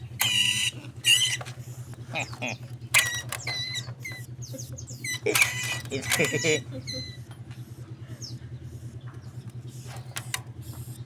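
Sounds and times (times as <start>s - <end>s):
rat squealing: 0.0s - 7.2s
steady low hum: 0.0s - 11.0s.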